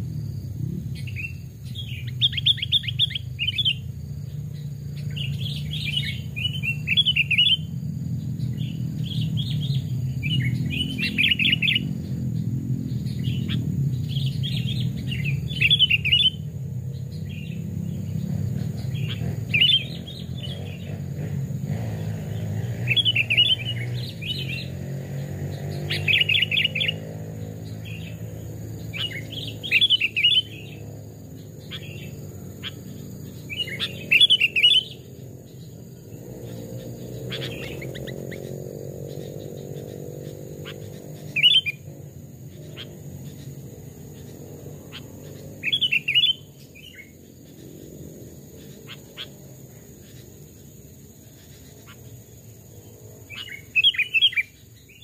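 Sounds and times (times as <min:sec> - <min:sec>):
bulbul singing chirpy notes: 0:00.0 - 0:55.0.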